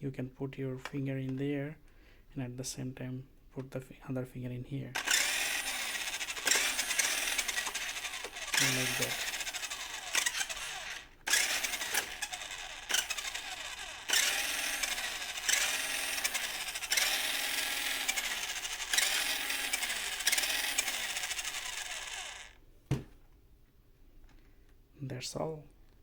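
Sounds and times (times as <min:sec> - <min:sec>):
toy truck electric motor whirring: 0:05.0 - 0:22.6.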